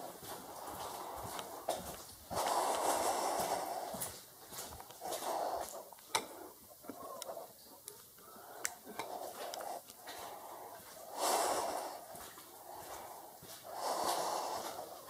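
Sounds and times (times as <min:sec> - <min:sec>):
footsteps clicking: 0:00.0 - 0:15.0
heavy breathing: 0:00.0 - 0:15.0.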